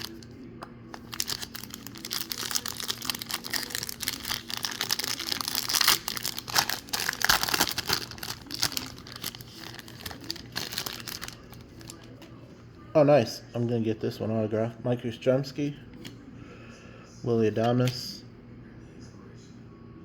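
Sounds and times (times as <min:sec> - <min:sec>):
plastic wrapper crinkling: 0:00.0 - 0:12.4.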